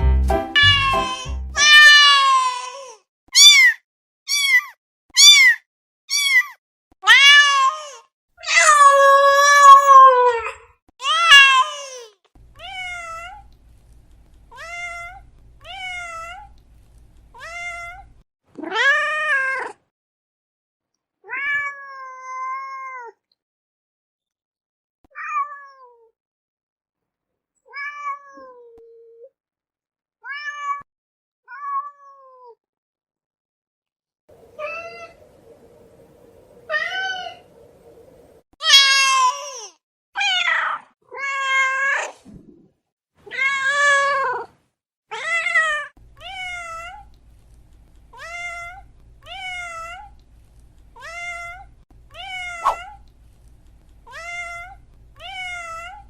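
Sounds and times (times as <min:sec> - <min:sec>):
cat meowing: 0:00.6 - 0:02.8, 0:03.4 - 0:10.5, 0:12.6 - 0:13.5, 0:14.5 - 0:16.6, 0:17.3 - 0:19.7, 0:34.4 - 0:35.2, 0:45.1 - 0:47.2, 0:48.1 - 0:50.2, 0:51.0 - 0:53.1, 0:54.0 - 0:56.0.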